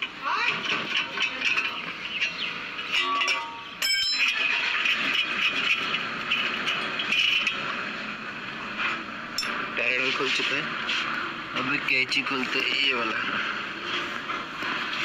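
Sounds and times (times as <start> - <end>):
metal tools clinking and scraping: 0.4 - 7.6, 9.4 - 9.7
ringing metallic clinks: 3.0 - 4.4, 9.4 - 9.6.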